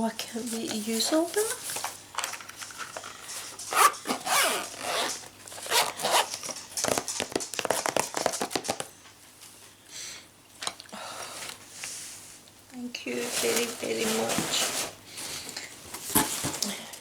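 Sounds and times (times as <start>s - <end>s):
handling noise: 0.4s - 9.0s
zipper pulled: 3.4s - 7.0s.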